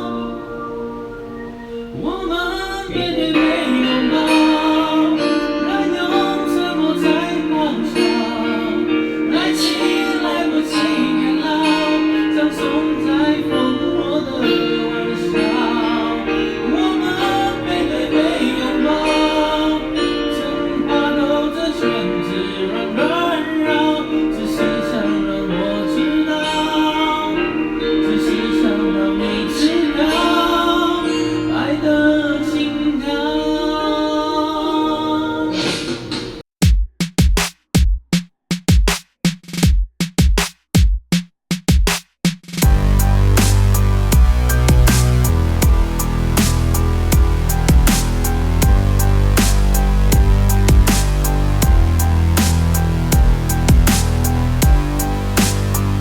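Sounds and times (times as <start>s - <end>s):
guitar backing track: 0.0s - 33.8s, 42.6s - 56.0s
person singing pop song: 0.0s - 36.4s.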